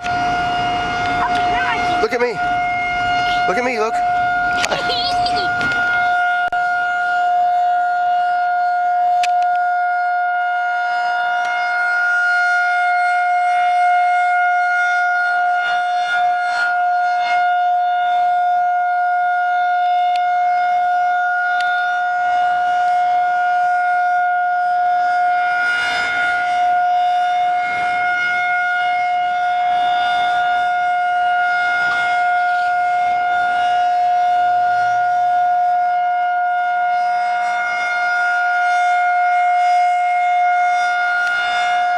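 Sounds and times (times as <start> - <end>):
steady siren tone: 0.0 - 41.9.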